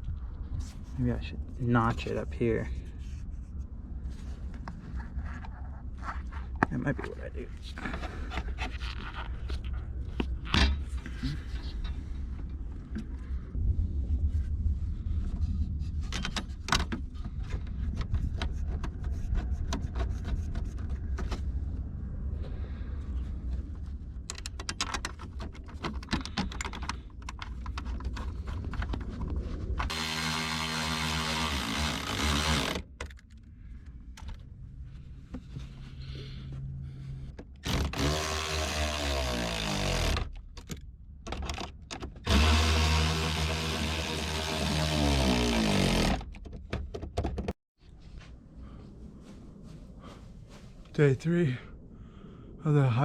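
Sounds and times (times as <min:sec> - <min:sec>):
tool handling clicks and knocks: 0:24.2 - 0:33.5, 0:37.3 - 0:47.6
small power tool spinning: 0:29.9 - 0:32.9, 0:37.6 - 0:40.3, 0:42.3 - 0:46.2.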